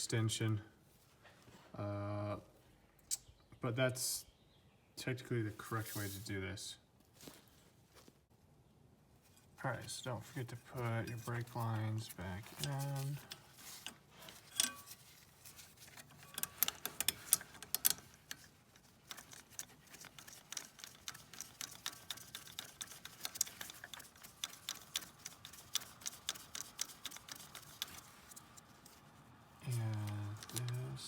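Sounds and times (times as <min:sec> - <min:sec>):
ratchet wrench clicking: 0:16.1 - 0:28.0.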